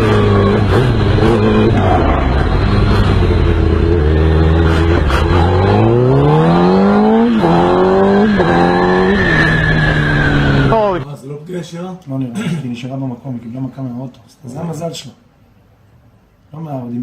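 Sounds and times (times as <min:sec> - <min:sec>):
vehicle engine accelerating hard: 0:00.0 - 0:11.0.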